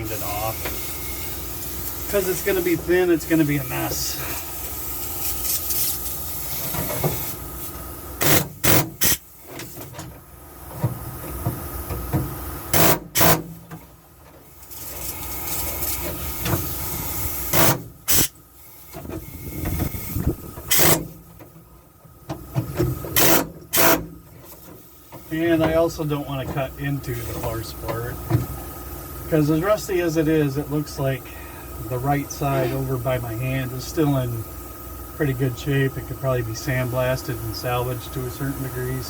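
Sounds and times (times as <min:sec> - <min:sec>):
pneumatic air chisel bursts: 0:00.0 - 0:02.8, 0:03.5 - 0:10.0, 0:12.6 - 0:13.7, 0:14.6 - 0:21.2, 0:23.1 - 0:25.3.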